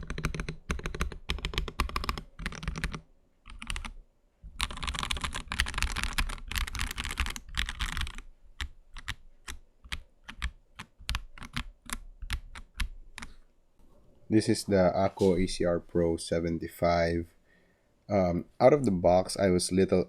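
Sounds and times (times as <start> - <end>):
mechanical keyboard typing: 0.0 - 13.4.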